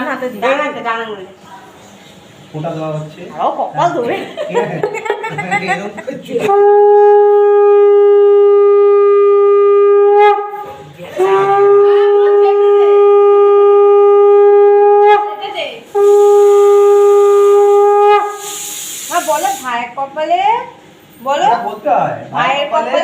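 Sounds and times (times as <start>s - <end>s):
conch shell blasts: 6.5s - 19.6s.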